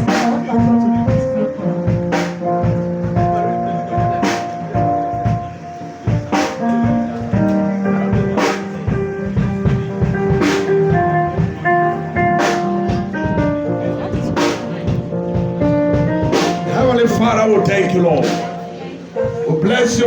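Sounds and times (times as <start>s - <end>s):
drum kit beat: 0.0s - 20.0s
held keyboard notes: 0.0s - 20.0s.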